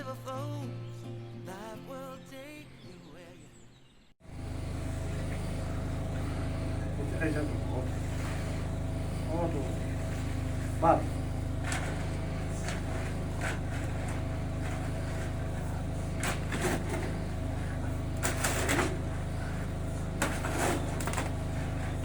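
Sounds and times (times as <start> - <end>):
motor droning: 4.2 - 22.0
scrapes and knocks: 16.1 - 17.4, 18.2 - 19.6, 20.2 - 22.0.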